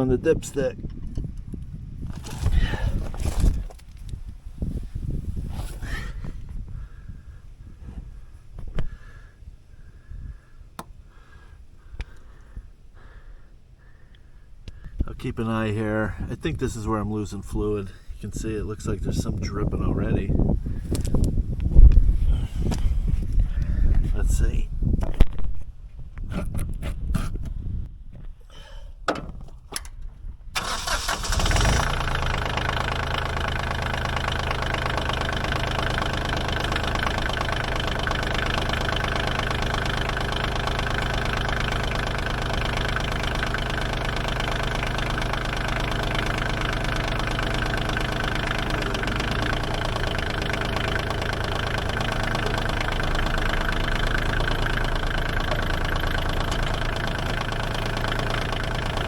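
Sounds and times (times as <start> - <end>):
diesel engine starting and idling: 2.1 - 3.8, 30.5 - 59.0.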